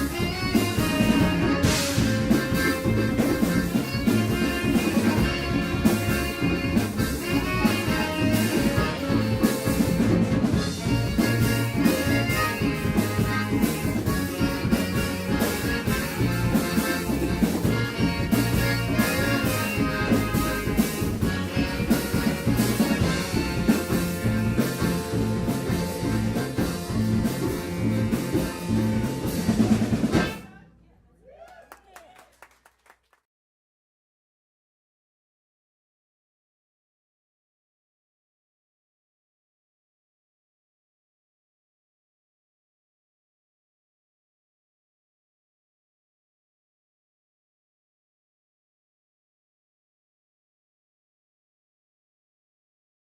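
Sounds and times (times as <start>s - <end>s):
drum kit beat: 0.0s - 30.6s
live band playing: 0.0s - 30.7s.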